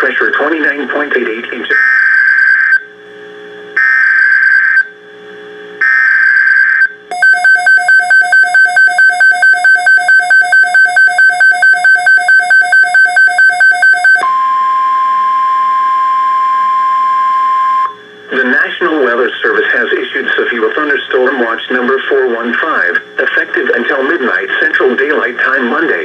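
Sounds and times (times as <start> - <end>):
steady warning alarm tone: 3.8 - 5.0, 5.8 - 18.3
rapid electronic beeping: 6.1 - 14.3.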